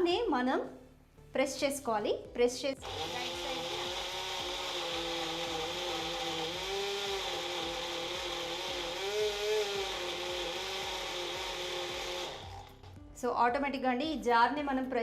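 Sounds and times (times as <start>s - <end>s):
blender motor running: 2.8s - 12.9s.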